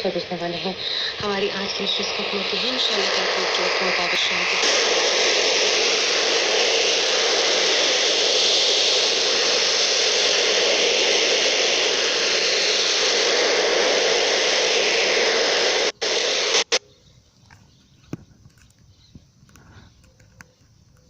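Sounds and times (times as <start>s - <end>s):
radio static hiss: 0.0s - 16.8s.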